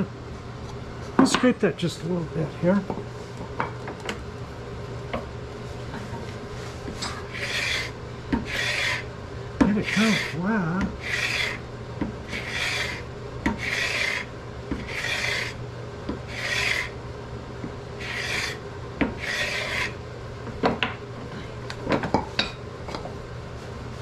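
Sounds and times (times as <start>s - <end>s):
scraper scraping wood: 7.1s - 9.1s, 9.7s - 10.4s, 11.0s - 11.6s, 12.3s - 15.6s, 16.3s - 17.0s, 18.0s - 18.6s, 19.2s - 20.0s.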